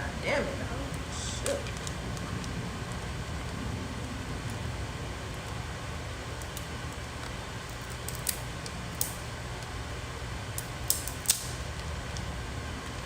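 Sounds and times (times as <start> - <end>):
steady low hum: 0.0 - 13.0
crab shells cracking: 6.4 - 9.2, 10.6 - 11.6.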